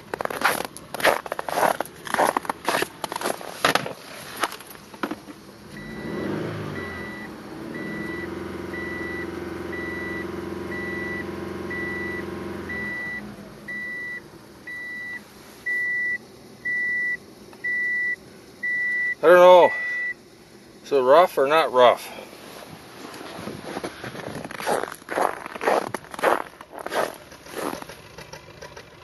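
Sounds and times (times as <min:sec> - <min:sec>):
car engine starting and idling: 0:00.0 - 0:29.0
warning chime beeping: 0:05.8 - 0:20.2.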